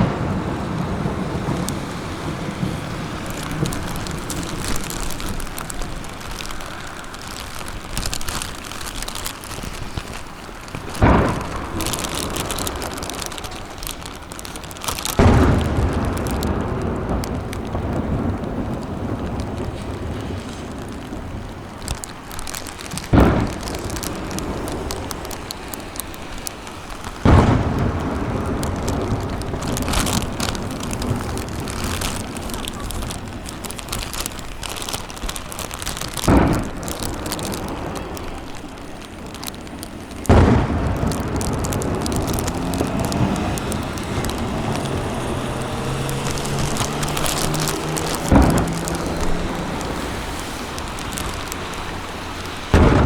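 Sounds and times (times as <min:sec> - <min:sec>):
crackle of sparkling shells: 0:00.0 - 0:53.0
firework shells booming: 0:09.8 - 0:21.5, 0:22.9 - 0:25.9, 0:26.9 - 0:34.6, 0:35.3 - 0:53.0.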